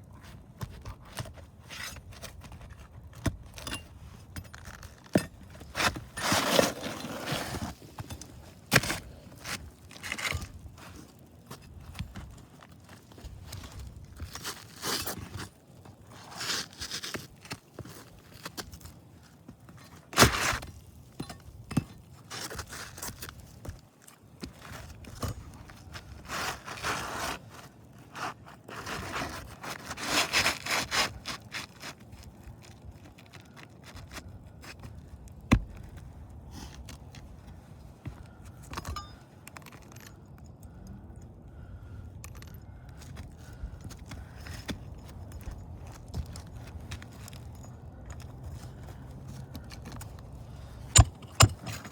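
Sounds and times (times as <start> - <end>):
shingles scraping and rustling: 0.7 - 35.9, 44.2 - 51.9.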